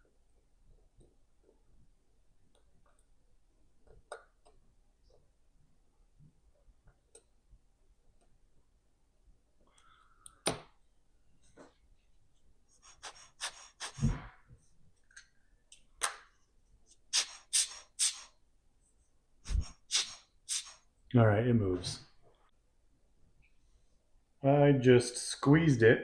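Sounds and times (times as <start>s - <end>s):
short breathy sounds: 12.7s - 14.4s.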